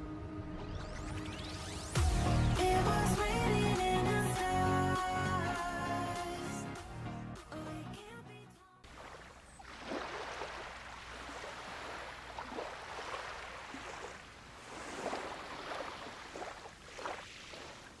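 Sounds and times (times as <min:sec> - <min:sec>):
seawater rushing and splashing: 0:08.9 - 0:18.0.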